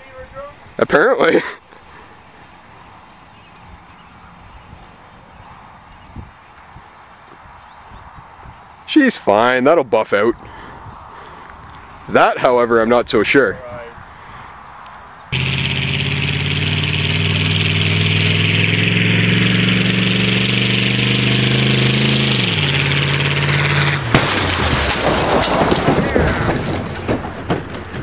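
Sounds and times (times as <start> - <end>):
noisy clatter: 15.4 - 19.1, 22.3 - 28.0
car engine revving: 15.4 - 26.9
voices: 25.8 - 26.8.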